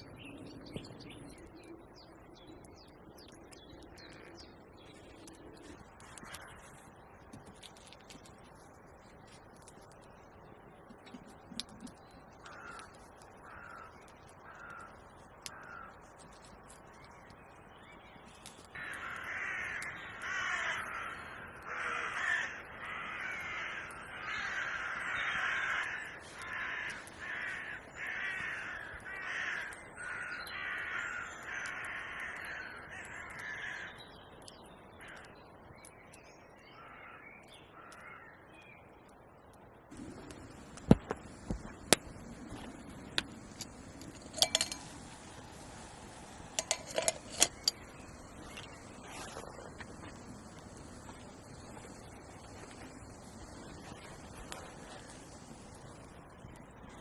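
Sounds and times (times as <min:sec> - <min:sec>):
crows cawing: 0:12.4 - 0:16.3, 0:18.7 - 0:34.0, 0:35.0 - 0:35.3, 0:36.8 - 0:38.4.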